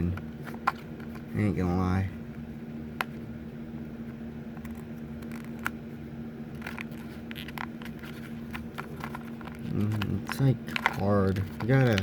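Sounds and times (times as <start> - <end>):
steady background hum: 0.0 - 12.0
plastic packaging clicks and crackles: 6.6 - 12.0.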